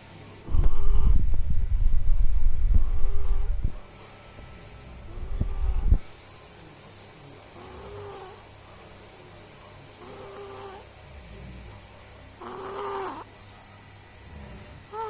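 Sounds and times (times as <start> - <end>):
whistly snoring: 0.5 - 6.0, 7.6 - 8.5, 9.9 - 13.3, 14.1 - 15.0.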